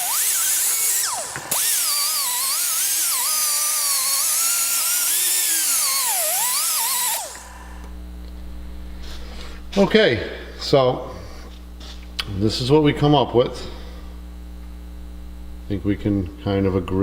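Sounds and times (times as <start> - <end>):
die grinder whining: 0.0 - 7.9
low steady hum: 0.6 - 17.0.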